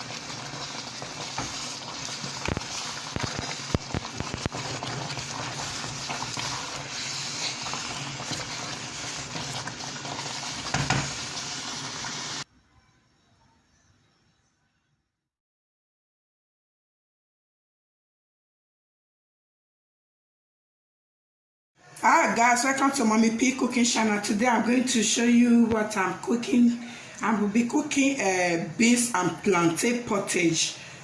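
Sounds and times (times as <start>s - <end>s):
food sizzling in a pot: 0.0s - 12.5s
utensil scraping a pot: 0.4s - 12.1s.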